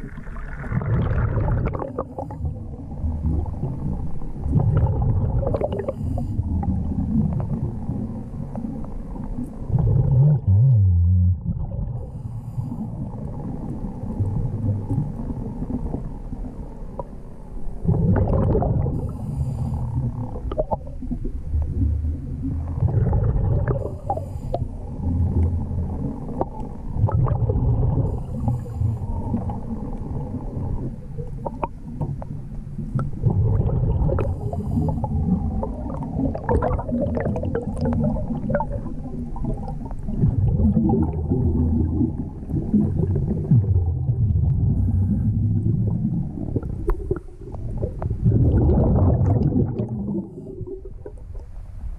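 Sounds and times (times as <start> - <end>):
gurgling exhaled bubbles: 0.0 - 16.6, 17.8 - 32.2, 32.8 - 51.6
steady low underwater rumble: 0.0 - 51.9
diver breathing through regulator: 19.0 - 20.2, 23.8 - 25.0, 28.0 - 29.5, 34.2 - 35.4.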